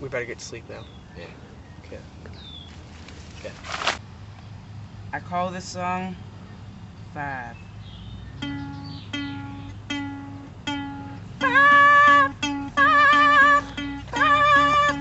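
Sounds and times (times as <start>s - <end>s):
ukulele playing: 8.4s - 15.0s.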